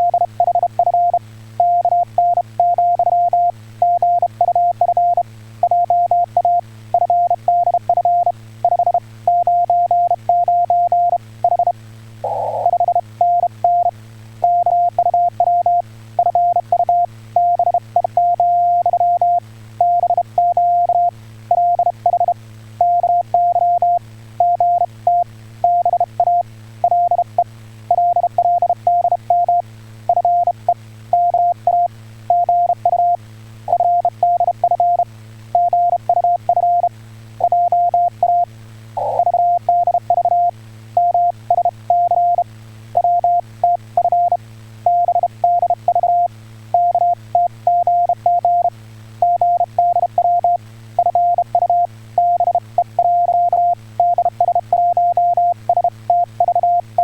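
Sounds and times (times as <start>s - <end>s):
steady low hum: 0.0s - 57.0s
morse code tone: 12.3s - 13.9s, 14.5s - 27.3s, 27.9s - 30.6s, 31.2s - 35.0s, 35.6s - 38.4s, 39.0s - 42.4s, 43.0s - 57.0s.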